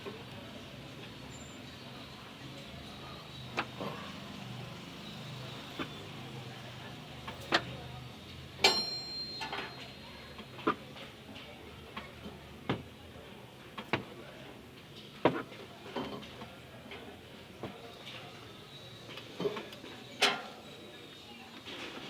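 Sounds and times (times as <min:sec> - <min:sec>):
ringing metal clang: 0:08.7 - 0:09.8.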